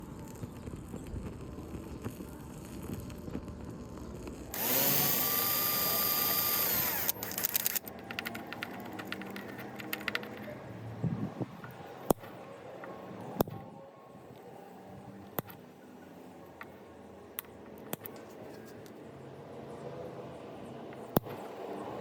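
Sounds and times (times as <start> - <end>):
rattle of small clicks: 0.4 - 10.6
electric drill running: 4.5 - 8.3.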